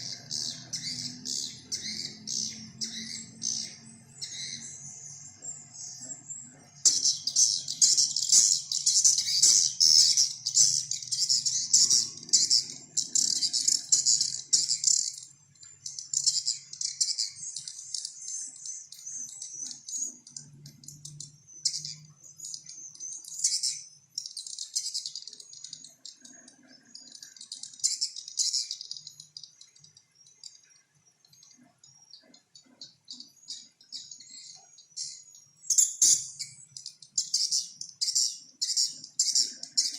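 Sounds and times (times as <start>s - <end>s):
bird chattering call: 6.9s - 15.2s.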